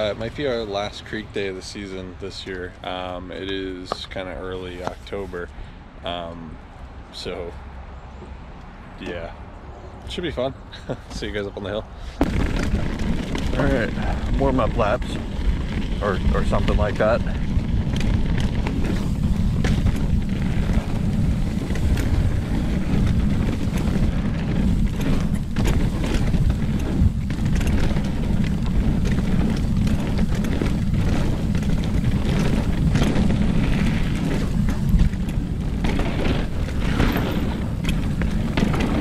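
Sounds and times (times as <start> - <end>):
wind buffeting microphone: 0.0 - 6.4, 10.1 - 39.0
tyres rolling on dirt: 0.0 - 7.6, 10.1 - 39.0
bike knocks and rattles: 12.2 - 39.0.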